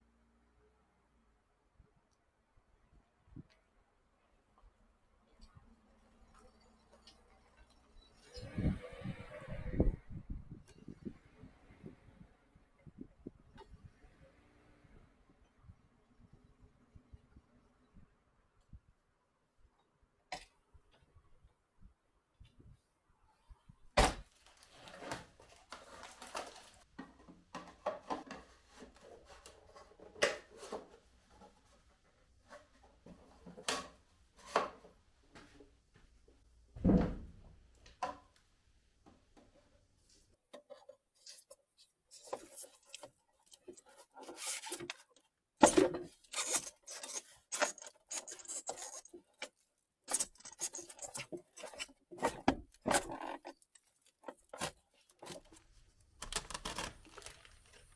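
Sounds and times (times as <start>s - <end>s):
tools scraping and rubbing: 27.6s - 34.9s, 40.6s - 55.7s.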